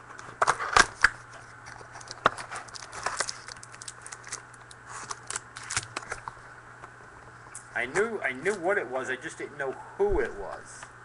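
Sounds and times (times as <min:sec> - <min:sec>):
sharp clicks and crinkles: 0:00.1 - 0:06.4.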